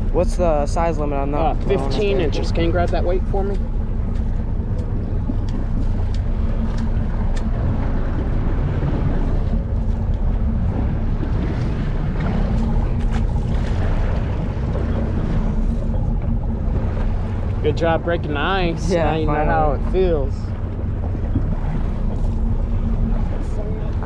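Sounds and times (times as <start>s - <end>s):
boat engine humming: 0.0s - 24.0s
water noise: 0.0s - 24.0s
wind buffeting microphone: 0.0s - 24.0s
faint clicks: 3.5s - 7.6s.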